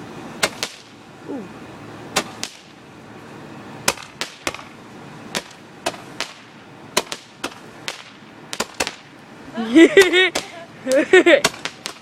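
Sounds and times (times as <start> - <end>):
fireworks cracking and popping: 0.4 - 1.0, 2.2 - 2.8, 3.9 - 9.2, 9.9 - 12.0.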